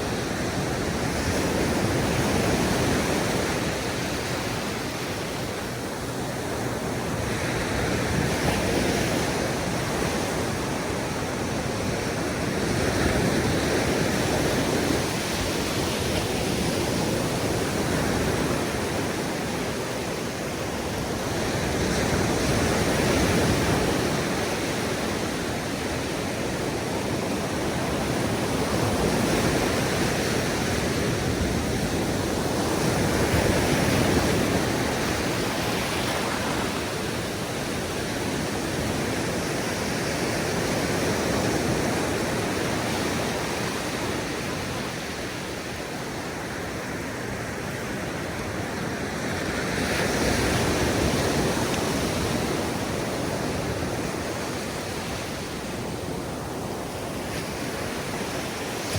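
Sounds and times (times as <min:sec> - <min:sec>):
waves breaking on beach: 0:00.0 - 0:58.9.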